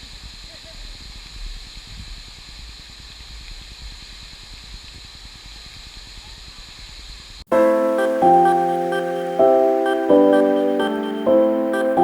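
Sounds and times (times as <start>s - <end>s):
waterfall rushing: 7.5s - 12.0s.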